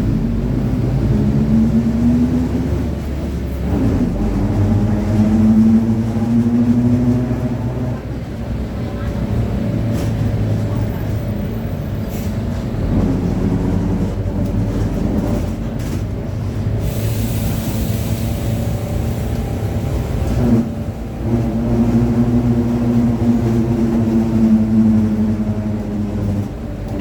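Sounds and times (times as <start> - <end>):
bus engine running: 0.0 - 27.0
hiss: 16.8 - 19.3.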